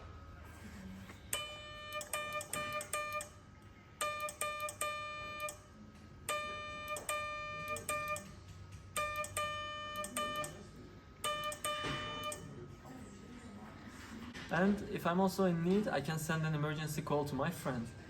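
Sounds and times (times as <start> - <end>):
morse code beeps: 1.3 - 3.4, 4.0 - 5.6, 6.3 - 8.4, 9.0 - 10.6, 11.2 - 12.5.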